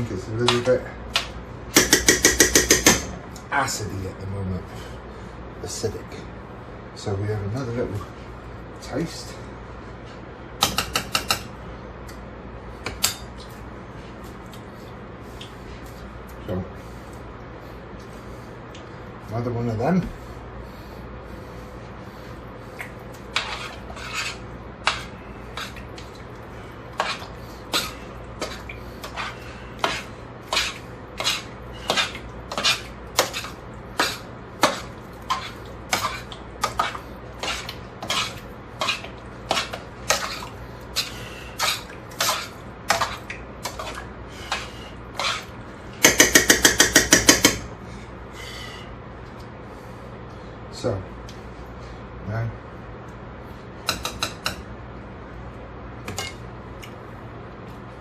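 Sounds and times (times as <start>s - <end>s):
spoon stirring thick sauce in pot: 23.2s - 25.9s, 27.0s - 44.6s.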